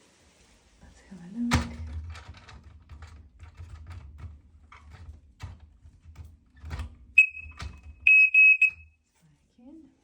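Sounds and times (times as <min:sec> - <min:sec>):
smoke alarm beeping: 0:07.2 - 0:08.9.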